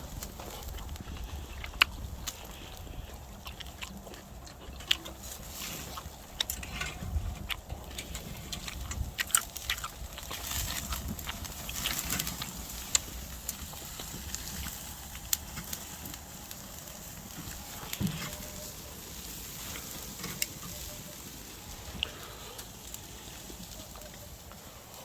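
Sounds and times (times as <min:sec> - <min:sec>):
wind rumble on microphone: 0:00.0 - 0:04.4, 0:06.0 - 0:16.3
campfire crackling and popping: 0:00.0 - 0:25.0
faint hiss: 0:12.0 - 0:25.0.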